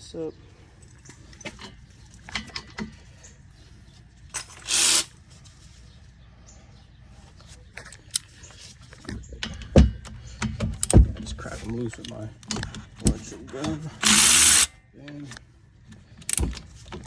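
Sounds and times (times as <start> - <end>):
metal tools clinking: 0.8 - 3.4, 7.8 - 15.4.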